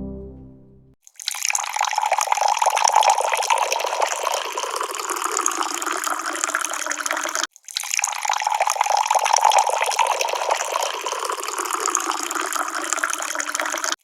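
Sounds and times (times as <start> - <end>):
music intro: 0.0 - 1.0
water pouring into a cup: 1.0 - 14.0.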